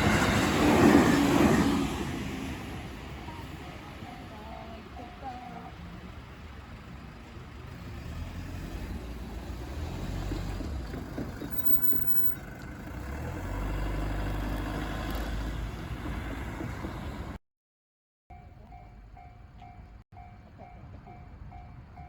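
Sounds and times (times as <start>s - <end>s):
deep vehicle rumble passing: 4.8s - 17.4s.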